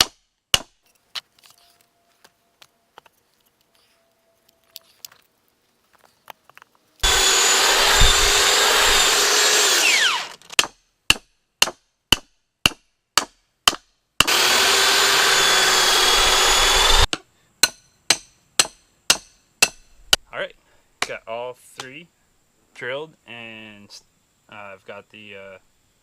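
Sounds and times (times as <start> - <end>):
power drill boring through wood: 7.0 - 10.6, 14.2 - 17.1
hammer strikes: 10.6 - 14.4, 17.1 - 20.2.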